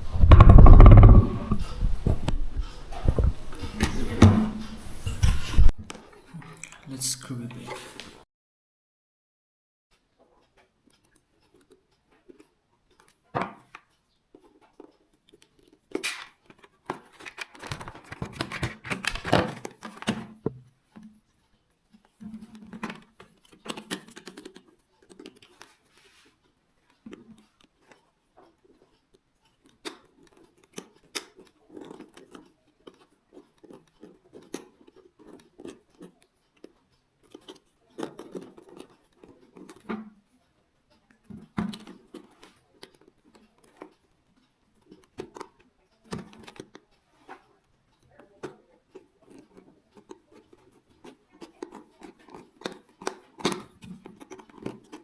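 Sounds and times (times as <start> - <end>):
small parts clicking and scraping: 0.0 - 5.8, 21.5 - 40.6.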